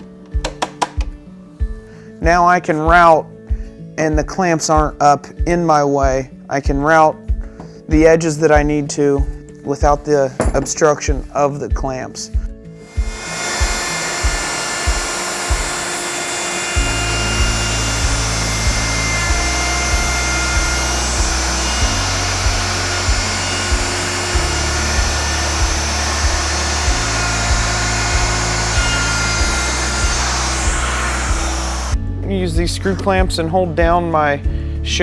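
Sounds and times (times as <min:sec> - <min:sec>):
background music with beat: 0:00.0 - 0:35.0
handheld router running: 0:12.8 - 0:32.0.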